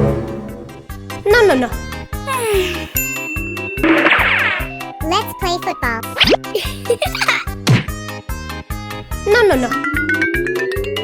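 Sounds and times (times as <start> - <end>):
upbeat children's music: 4.8 - 10.9.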